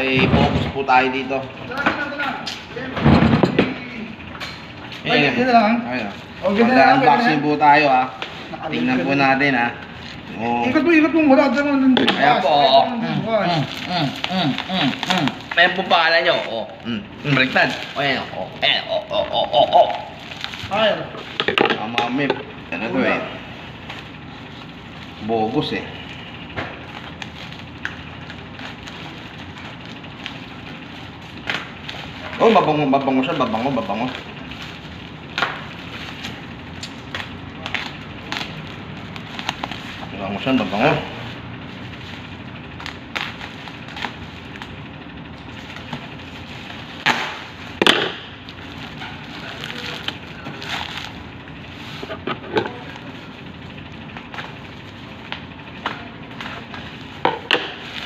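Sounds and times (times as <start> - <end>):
packaging crackling: 13.4 - 22.6, 23.5 - 44.8, 48.4 - 52.0.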